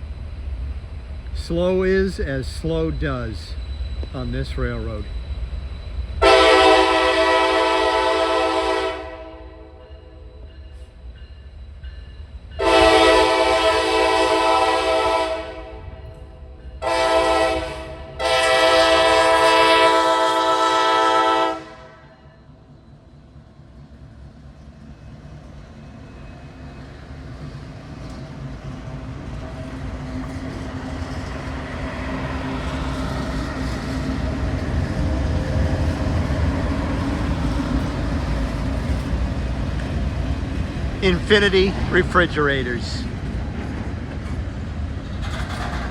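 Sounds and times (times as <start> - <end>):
train rolling: 0.0 - 45.9
locomotive air horn blasts: 6.2 - 9.8, 12.6 - 16.0, 16.8 - 22.3
diesel engines rumbling: 22.6 - 45.9.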